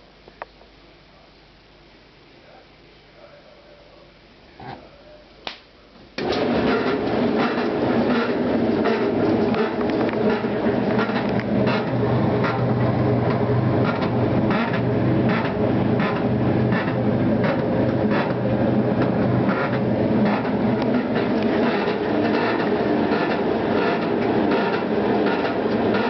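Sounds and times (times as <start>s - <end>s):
washing machine motor hum: 6.0s - 26.0s.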